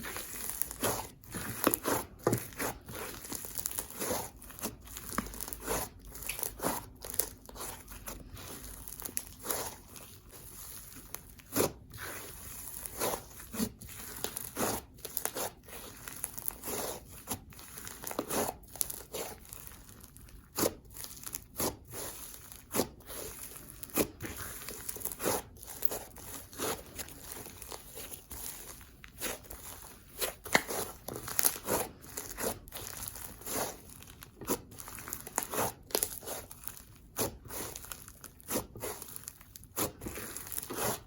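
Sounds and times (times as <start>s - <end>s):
slime crackling and crunching: 0.0s - 41.0s.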